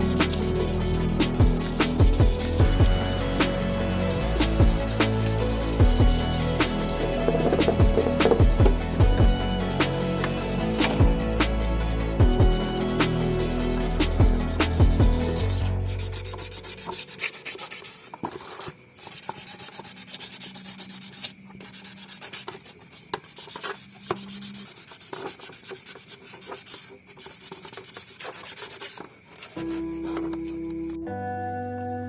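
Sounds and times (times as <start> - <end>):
sandpaper rubbing: 0.0 - 11.5, 12.5 - 30.4
music: 0.0 - 18.4, 29.6 - 32.0.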